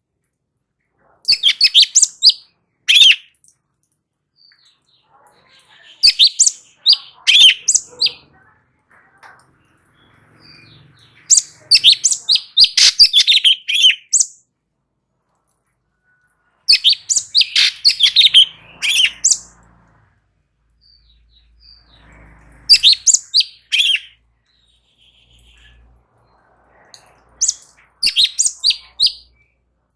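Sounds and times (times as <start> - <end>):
bird chirping and whistling: 1.3 - 3.3, 6.0 - 8.2, 11.3 - 14.4, 16.7 - 19.5, 22.7 - 24.2, 27.4 - 29.3.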